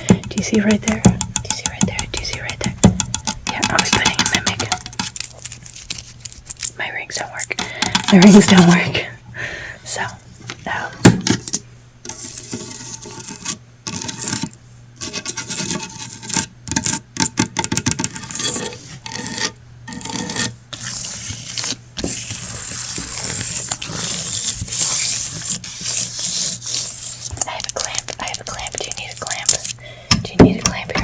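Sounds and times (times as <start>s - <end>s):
scratching and rubbing on hard surfaces: 0.0s - 7.4s, 8.0s - 9.0s, 12.0s - 17.1s, 17.8s - 31.0s.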